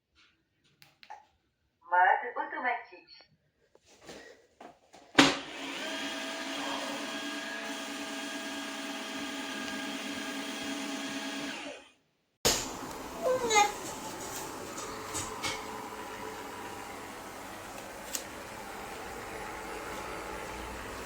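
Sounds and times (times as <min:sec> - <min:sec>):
vacuum cleaner motor: 0:05.2 - 0:21.0.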